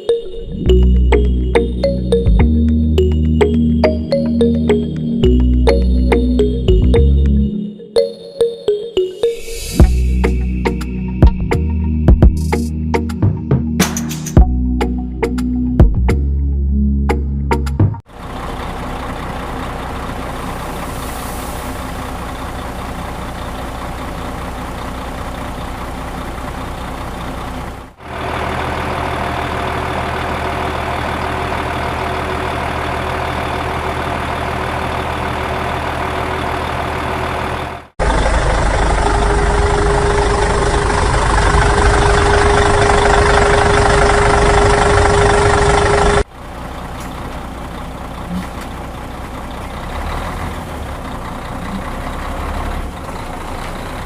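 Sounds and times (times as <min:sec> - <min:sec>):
heavy vehicle engines running: 0:00.0 - 0:07.6, 0:09.8 - 0:16.3, 0:17.1 - 0:54.0
high whine: 0:38.4 - 0:46.3.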